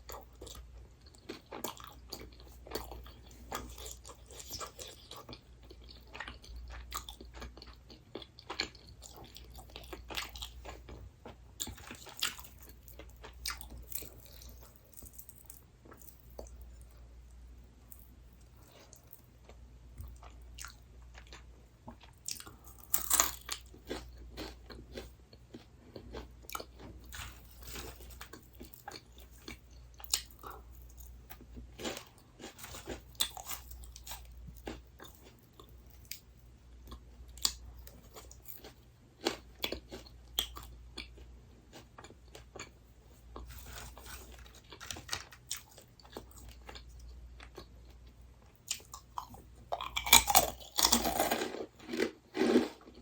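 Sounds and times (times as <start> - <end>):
crisp snack crunching: 43.4 - 47.7, 48.7 - 53.0.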